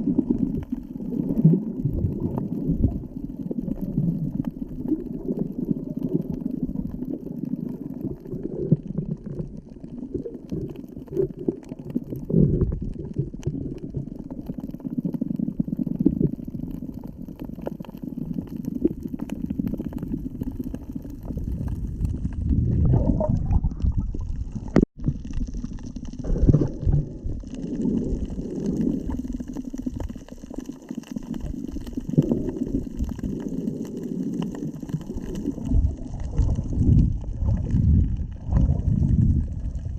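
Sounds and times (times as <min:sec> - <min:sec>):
muffled underwater rumbling: 0:00.0 - 0:39.9.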